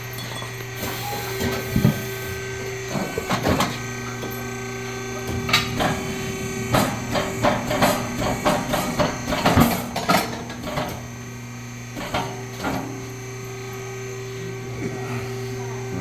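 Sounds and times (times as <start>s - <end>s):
steady machine hum: 0.0s - 16.0s
metal knocks and clanks: 5.2s - 11.1s.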